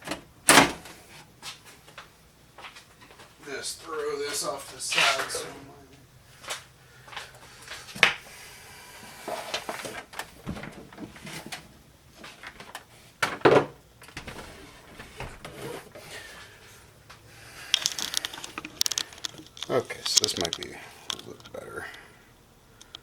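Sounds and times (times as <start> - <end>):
objects knocking and clunking: 9.8 - 15.6, 17.7 - 21.5
rustling: 14.0 - 21.6.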